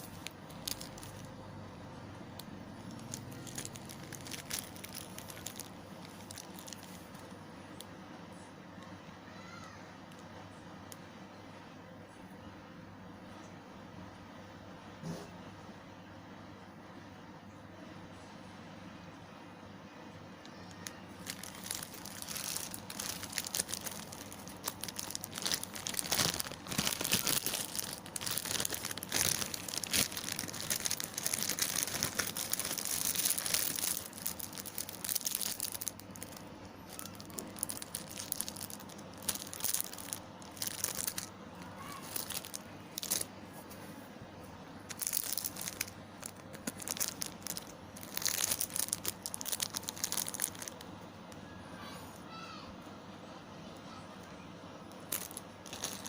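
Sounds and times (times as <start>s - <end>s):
plastic packaging crinkling: 0.0s - 1.5s, 2.3s - 7.8s, 20.6s - 43.8s, 44.9s - 50.9s, 54.9s - 56.0s.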